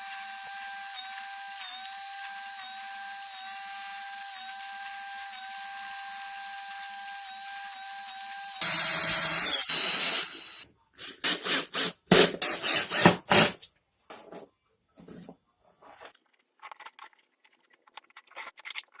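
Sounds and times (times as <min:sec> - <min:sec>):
power tool whining: 0:00.0 - 0:10.6.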